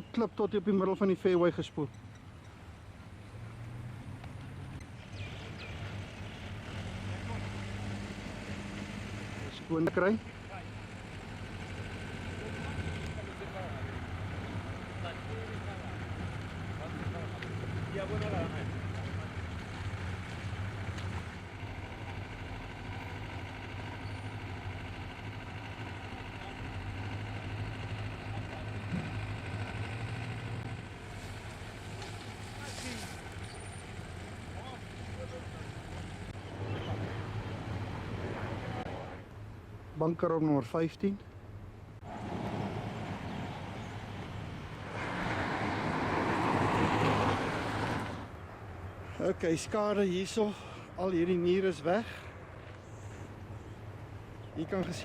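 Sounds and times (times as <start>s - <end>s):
vehicle engine running: 3.6s - 39.1s.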